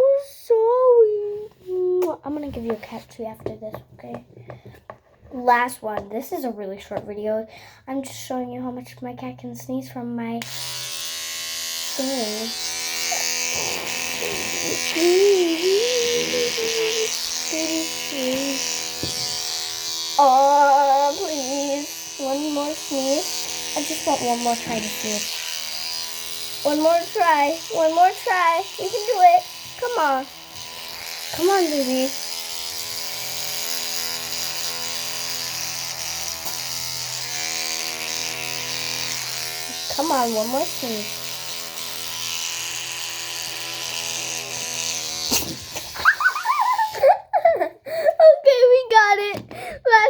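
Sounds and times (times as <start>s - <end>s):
electric toothbrush buzzing: 10.4s - 47.7s.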